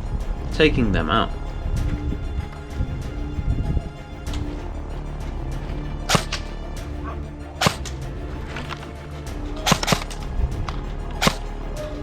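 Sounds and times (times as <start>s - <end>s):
airsoft gun shots: 6.1s - 6.4s, 7.6s - 8.0s, 9.6s - 10.2s, 11.2s - 11.4s.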